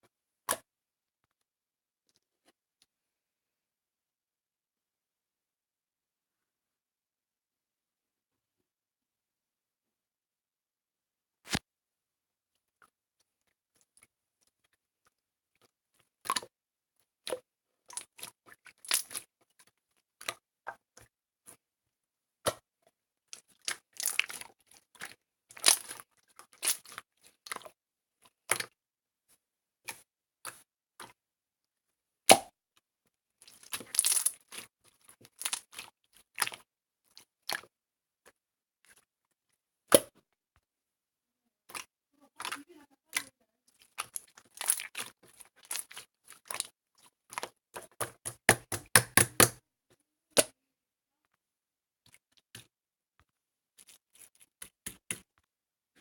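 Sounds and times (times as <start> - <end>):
crisp clicks and crunches: 33.4 - 35.9.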